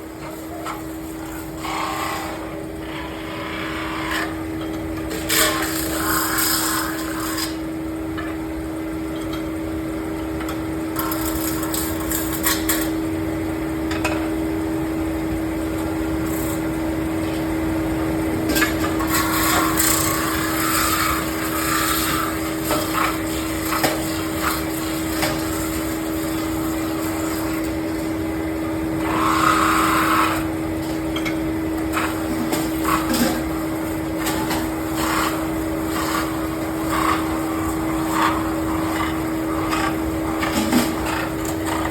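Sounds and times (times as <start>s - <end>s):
lathe tool scraping metal: 0.5s - 4.4s, 5.0s - 7.6s, 18.9s - 25.8s, 29.0s - 30.5s, 34.2s - 41.9s
metal lathe humming: 29.0s - 30.5s, 31.8s - 41.9s.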